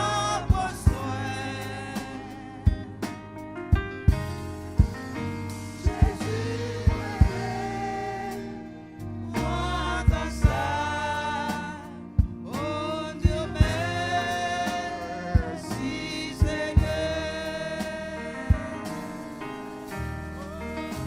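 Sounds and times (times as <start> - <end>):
gospel singing: 0.0 - 3.4, 4.5 - 21.0
bass line: 0.0 - 21.0
sharp drum hits: 2.0 - 8.6, 13.2 - 17.2.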